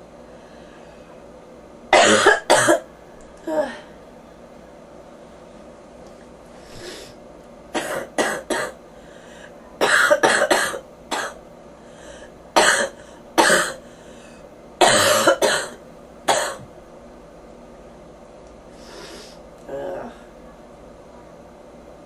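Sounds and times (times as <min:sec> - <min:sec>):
person coughing: 0:01.9 - 0:02.8, 0:07.8 - 0:08.8, 0:09.8 - 0:11.4, 0:12.6 - 0:13.8, 0:14.8 - 0:16.7.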